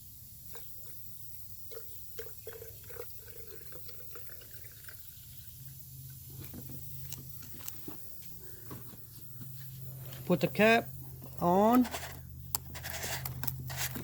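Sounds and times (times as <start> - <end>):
fuel trickling and gurgling: 0.0 - 10.3.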